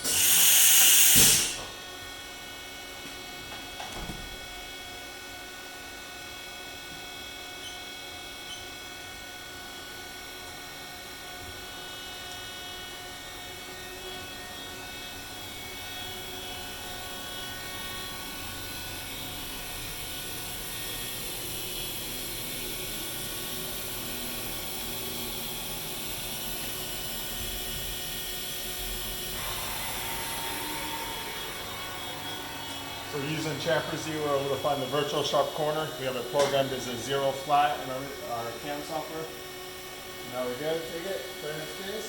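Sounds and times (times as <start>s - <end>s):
hiss: 0.0s - 1.8s
cnc machine whirring and whining: 0.0s - 42.0s.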